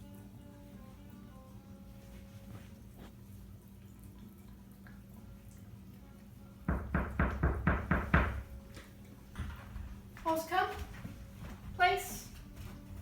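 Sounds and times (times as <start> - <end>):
quick knocking on a door: 6.7 - 8.5.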